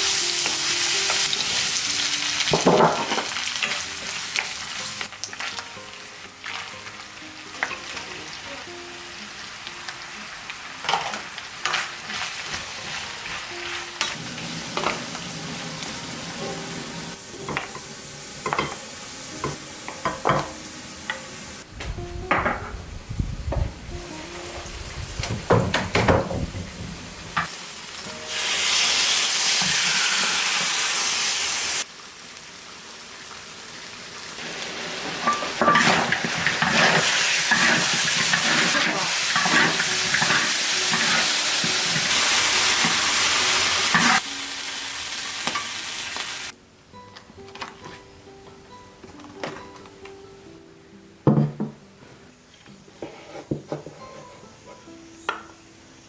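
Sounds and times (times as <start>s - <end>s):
loud sizzle: 0.0s - 21.7s, 26.4s - 46.6s
utensils clattering against pan: 10.8s - 12.6s, 35.1s - 42.2s.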